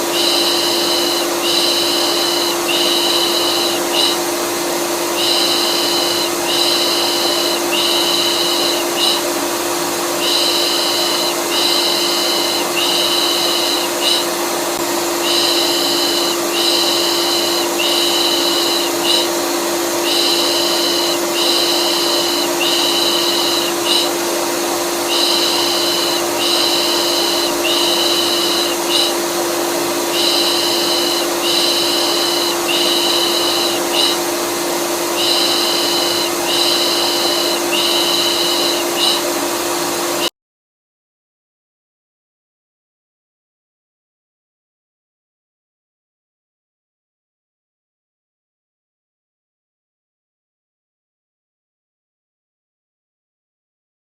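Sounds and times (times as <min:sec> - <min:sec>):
vacuum cleaner motor humming: 0:00.0 - 0:40.3.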